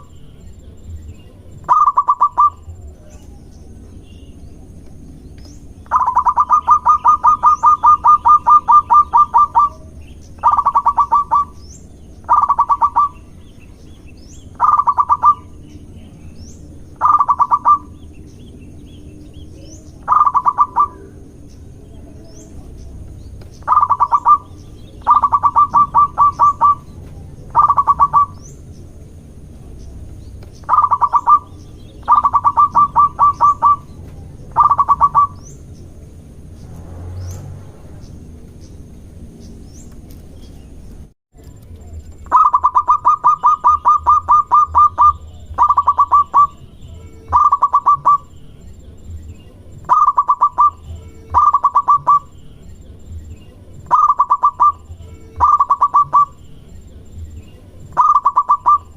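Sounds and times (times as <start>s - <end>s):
small birds chirping: 0.0s - 58.9s
dove cooing: 1.3s - 3.4s, 5.8s - 11.6s, 12.2s - 13.3s, 14.5s - 15.6s, 17.0s - 18.0s, 19.6s - 21.3s, 23.6s - 28.5s, 30.6s - 35.5s, 42.3s - 46.6s, 47.3s - 48.3s, 49.8s - 52.3s, 53.8s - 56.4s, 57.9s - 58.9s.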